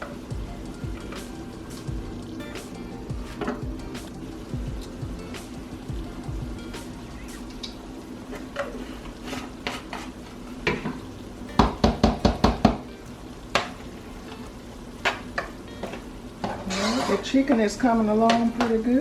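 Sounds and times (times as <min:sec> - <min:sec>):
chicken frying in a pan: 0:00.0 - 0:19.0
spoon knocking against pot: 0:11.6 - 0:12.8.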